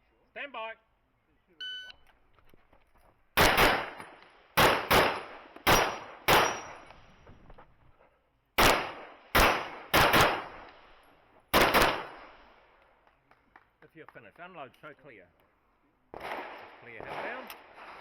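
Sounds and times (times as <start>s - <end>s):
handgun shots: 3.4s - 4.0s, 4.6s - 6.9s.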